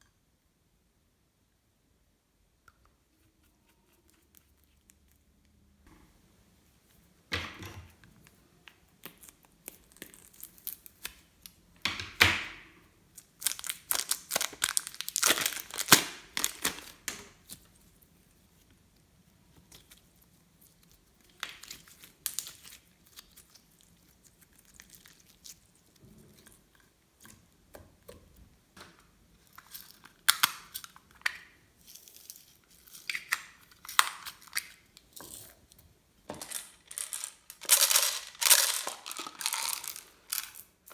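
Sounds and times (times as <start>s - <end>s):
slime crackling and popping: 9.0s - 11.6s, 13.1s - 17.7s.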